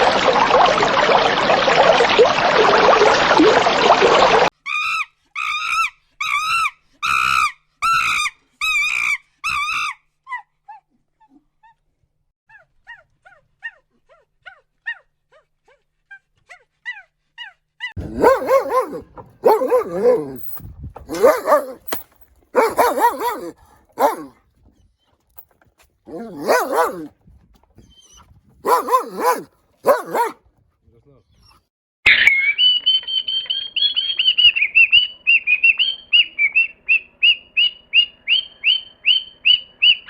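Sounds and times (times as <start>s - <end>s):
dog barking: 18.0s - 20.4s, 21.1s - 22.0s, 22.6s - 24.4s, 26.1s - 27.1s, 28.6s - 30.4s
dog high cries: 18.0s - 20.4s, 21.1s - 21.8s, 22.6s - 24.3s, 26.1s - 27.1s, 27.9s - 30.4s.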